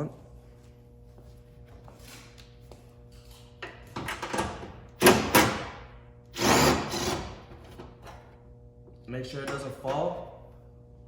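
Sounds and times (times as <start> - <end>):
impact driver bursts: 5.0 - 7.4.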